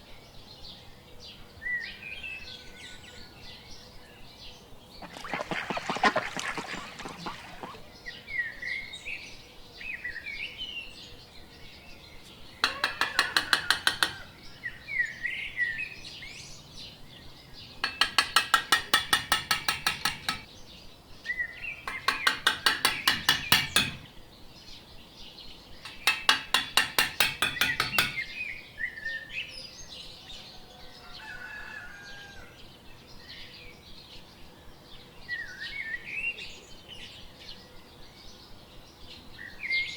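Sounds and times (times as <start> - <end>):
small birds chirping: 0.0 - 31.6.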